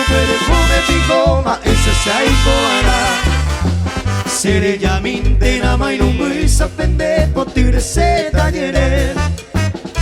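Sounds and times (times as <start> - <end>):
person singing: 0.0 - 3.4
band playing polka: 0.0 - 10.0
repeating bass line: 0.0 - 10.0.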